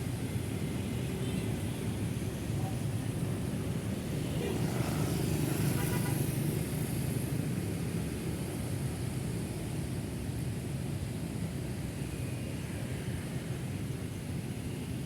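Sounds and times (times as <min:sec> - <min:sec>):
city road traffic rumble: 0:00.0 - 0:15.0
passing vehicle hiss: 0:03.7 - 0:07.9.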